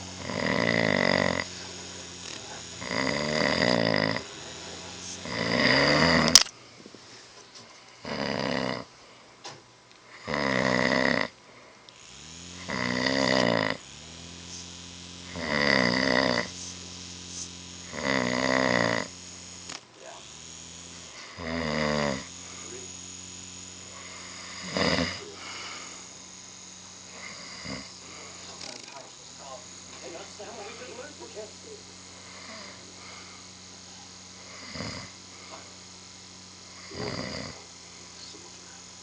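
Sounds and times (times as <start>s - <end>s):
person snoring loudly: 0.0s - 6.4s, 8.0s - 8.9s, 10.1s - 11.4s, 12.0s - 19.3s, 21.0s - 39.0s.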